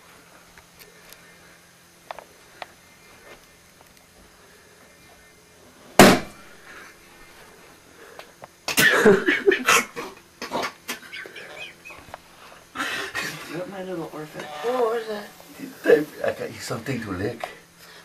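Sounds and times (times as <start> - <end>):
loud burst of noise: 6.0 - 7.1.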